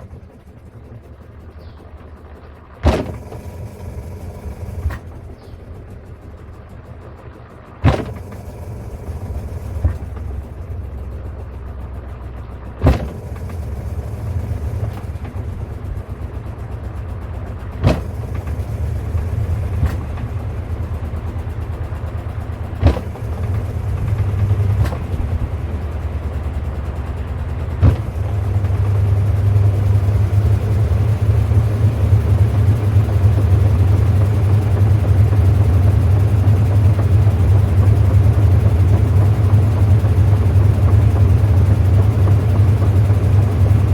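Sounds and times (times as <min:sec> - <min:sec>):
washing machine motor humming: 0:00.0 - 0:43.9.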